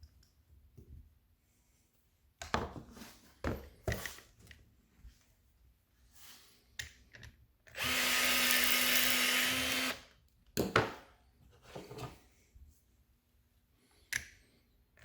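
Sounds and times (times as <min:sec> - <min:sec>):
power tool motor running: 0:07.8 - 0:10.0.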